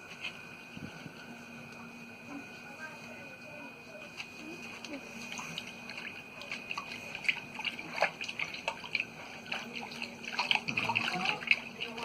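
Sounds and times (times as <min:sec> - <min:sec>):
tap water splashing and dripping: 0:04.8 - 0:12.0.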